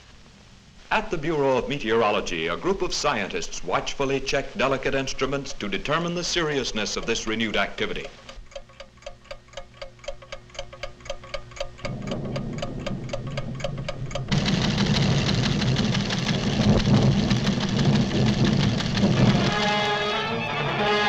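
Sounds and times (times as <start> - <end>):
clock-like ticking: 3.5 - 20.2
low rumble: 11.8 - 21.0
low held tone: 18.5 - 21.0
loud orchestral music: 19.2 - 21.0.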